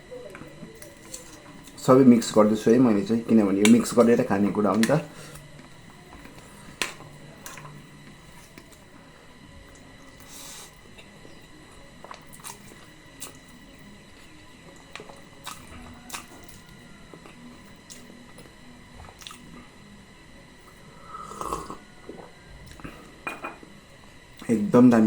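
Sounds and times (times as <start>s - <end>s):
chewing and squishing: 11.7s - 19.6s, 21.4s - 23.0s.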